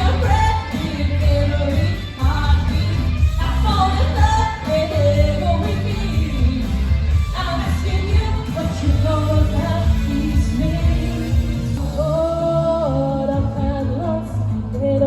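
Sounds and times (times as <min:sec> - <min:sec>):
lead singer: 0:00.0 - 0:15.0
pulsing bass line: 0:00.0 - 0:15.0.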